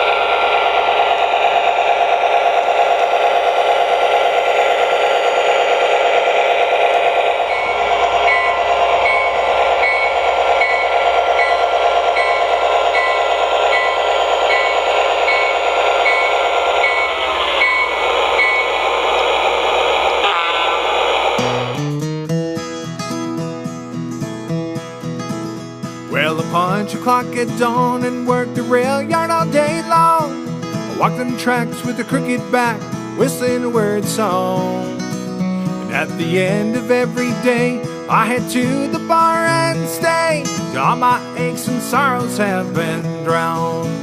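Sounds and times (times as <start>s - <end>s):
bell ringing: 4.8s - 21.7s.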